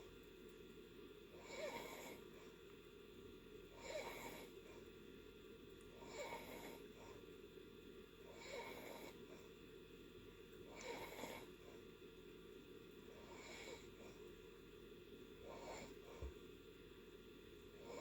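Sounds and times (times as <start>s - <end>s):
person snoring faintly: 10.7s - 11.6s.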